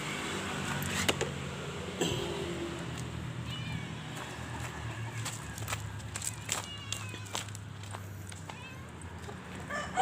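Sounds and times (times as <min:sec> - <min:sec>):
cat meowing: 0:03.4 - 0:04.2, 0:08.5 - 0:08.9.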